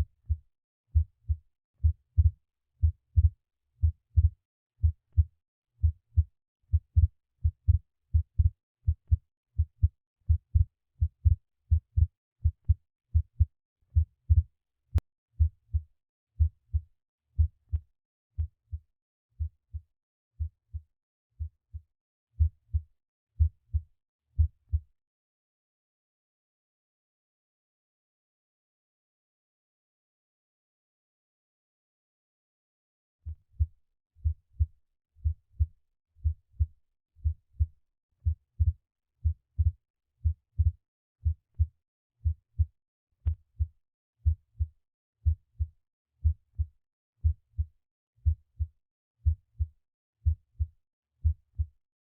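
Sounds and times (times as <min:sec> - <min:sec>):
lub-dub heart beats: 0:00.0 - 0:14.5, 0:15.4 - 0:17.8, 0:19.4 - 0:19.8, 0:20.4 - 0:20.8, 0:22.4 - 0:22.8, 0:23.4 - 0:23.8, 0:24.4 - 0:24.8, 0:33.3 - 0:51.7.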